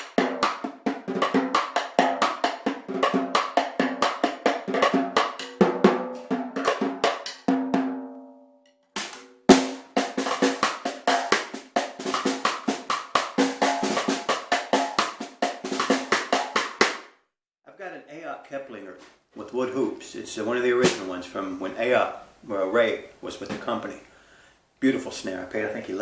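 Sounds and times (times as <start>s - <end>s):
snare drum strokes: 0.0s - 7.4s, 9.0s - 17.1s, 20.8s - 21.2s
loud drum crack: 0.0s - 8.0s, 9.0s - 17.1s, 20.8s - 21.3s.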